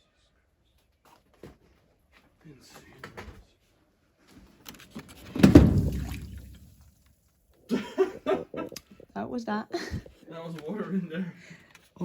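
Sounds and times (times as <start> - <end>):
water splashing out: 5.4 - 6.8.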